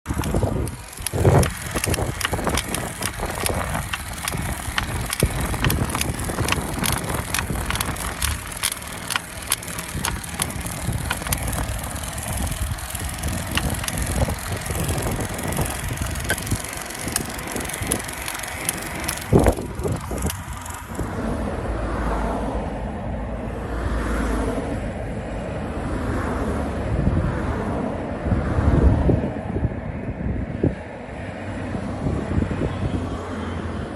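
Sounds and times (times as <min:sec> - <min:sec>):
bicycle drive creaking and clicking: 0:00.0 - 0:22.4
wind noise: 0:00.1 - 0:21.4, 0:26.8 - 0:33.9.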